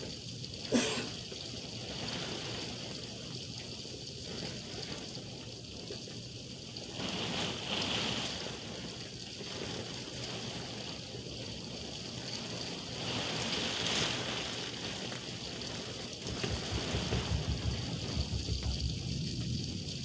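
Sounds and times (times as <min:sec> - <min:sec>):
heavy rain pouring: 0:15.6 - 0:20.0.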